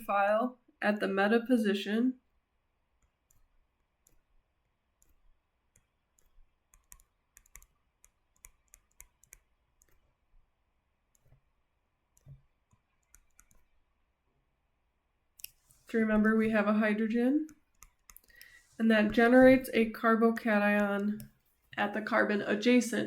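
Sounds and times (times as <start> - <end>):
faint clicks and taps: 5.0 - 10.1, 12.1 - 13.7, 15.4 - 16.5, 17.4 - 19.7, 20.7 - 22.0.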